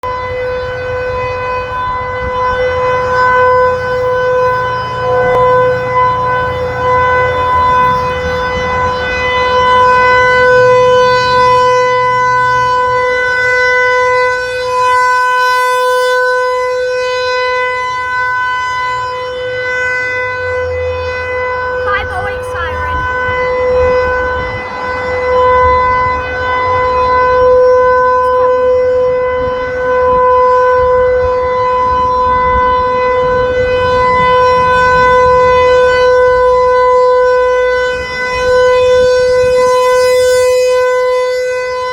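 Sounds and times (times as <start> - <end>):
outdoor warning siren tone: 0.0 - 41.9.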